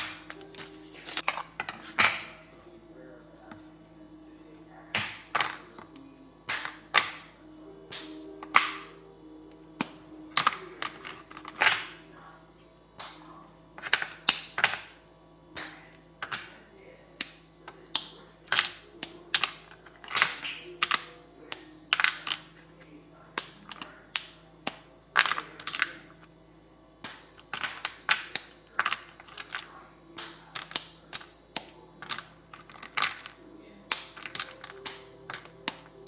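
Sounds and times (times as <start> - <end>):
kitchen utensils clicking and tapping: 27.0 - 36.0.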